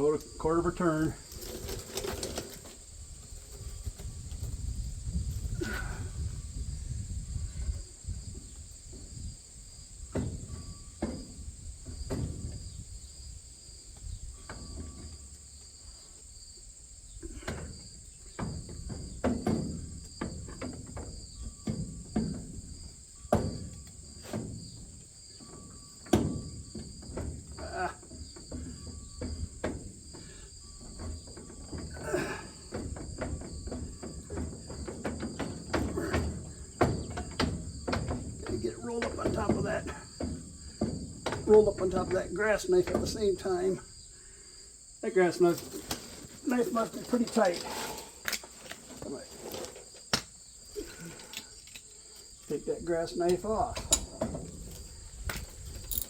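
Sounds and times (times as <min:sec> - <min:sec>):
crickets chirping: 0:00.0 - 0:56.0
tools and metal clanking: 0:14.0 - 0:15.6, 0:17.3 - 0:43.7, 0:45.4 - 0:56.0.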